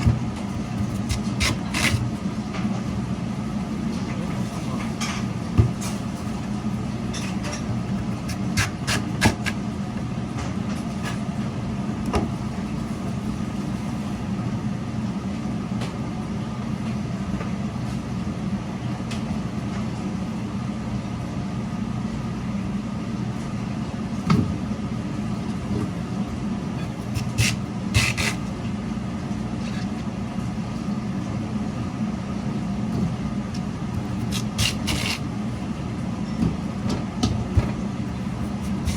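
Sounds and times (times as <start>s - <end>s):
slicing machine motor hum: 26.8s - 28.6s, 33.5s - 35.4s.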